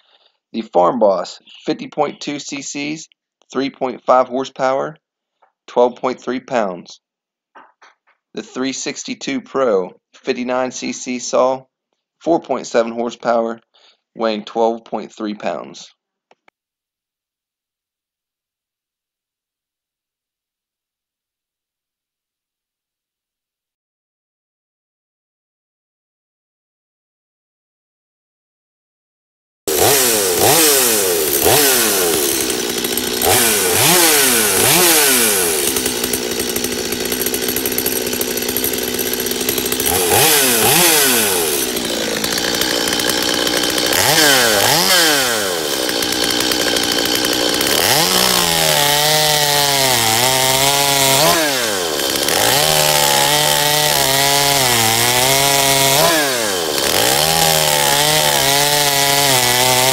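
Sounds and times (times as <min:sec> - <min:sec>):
chainsaw revving and cutting wood: 0:29.7 - 0:59.9.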